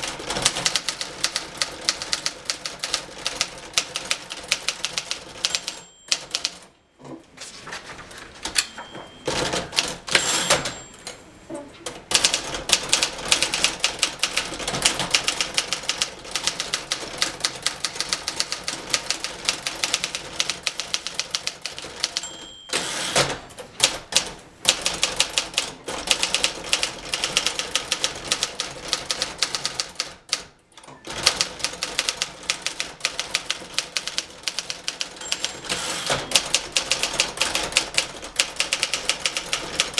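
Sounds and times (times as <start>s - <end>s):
manual typewriter keystrokes: 0.0s - 6.7s, 7.9s - 11.2s, 11.9s - 39.9s
typewriter carriage return: 0.2s - 6.6s, 7.4s - 11.2s, 11.8s - 39.9s
typewriter margin bell ring: 4.9s - 6.7s, 8.4s - 11.2s, 21.7s - 23.6s, 35.0s - 38.1s.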